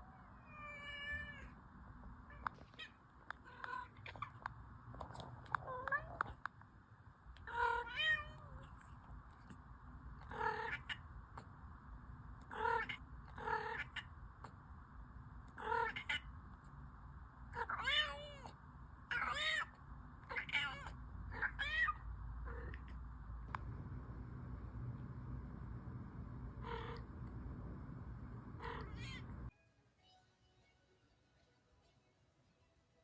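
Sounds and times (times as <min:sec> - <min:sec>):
cat meowing: 0:00.2 - 0:01.5, 0:05.6 - 0:06.4, 0:07.4 - 0:08.9, 0:10.3 - 0:11.0, 0:12.5 - 0:14.1, 0:15.6 - 0:16.3, 0:17.6 - 0:18.5, 0:19.1 - 0:22.9, 0:28.6 - 0:29.3.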